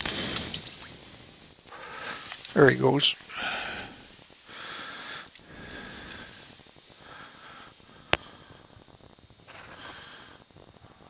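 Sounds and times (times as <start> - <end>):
person breathing out: 3.2 - 8.7, 9.5 - 10.5.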